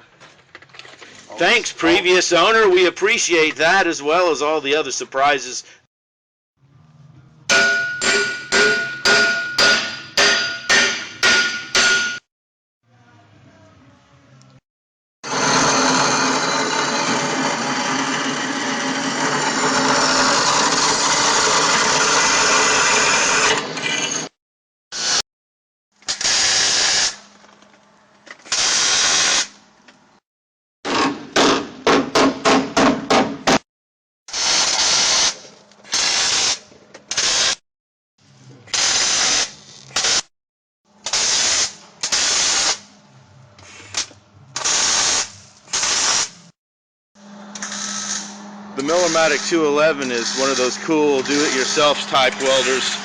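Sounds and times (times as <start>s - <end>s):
hammer striking metal: 7.5s - 12.2s
metal-working tools running: 15.3s - 24.2s, 47.2s - 53.0s.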